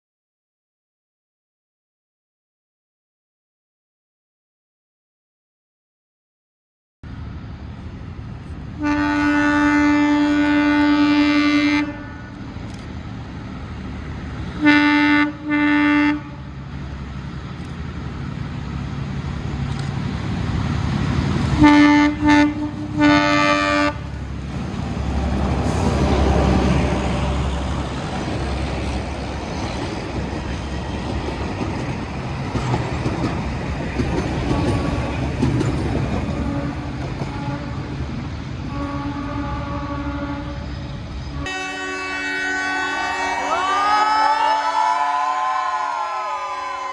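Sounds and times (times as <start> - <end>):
train running on rails: 7.0 - 46.9
locomotive horn blasts: 8.8 - 12.4, 14.5 - 16.6, 21.5 - 24.2, 36.4 - 38.0, 38.6 - 43.7
diesel engine rumbling: 11.9 - 41.4.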